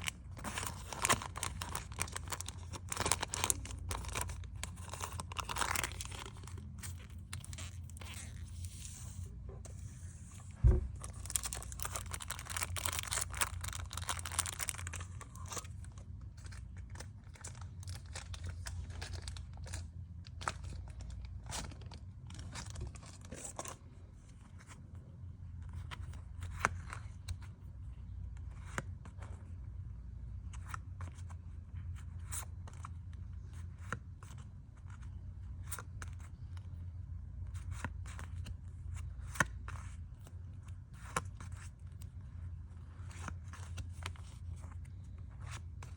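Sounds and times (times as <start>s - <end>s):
packing material crinkling and tearing: 0.0s - 9.2s, 11.0s - 23.8s.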